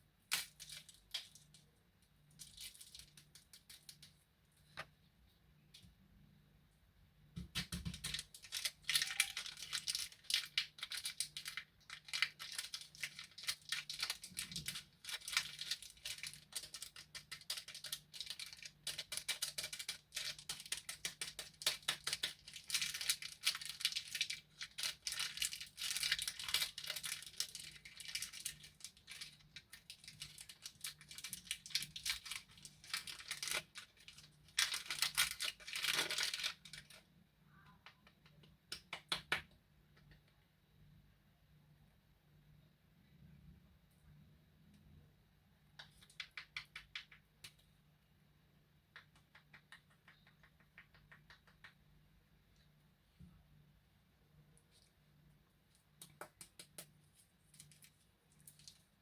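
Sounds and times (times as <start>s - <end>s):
plastic wrappers crinkling: 0.3s - 1.6s, 2.3s - 4.2s, 7.9s - 37.0s, 57.2s - 59.0s.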